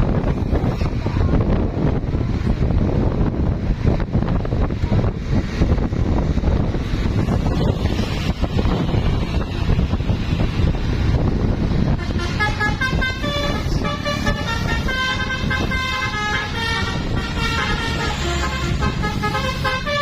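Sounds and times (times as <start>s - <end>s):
multi-tone horn tune: 11.9s - 20.0s.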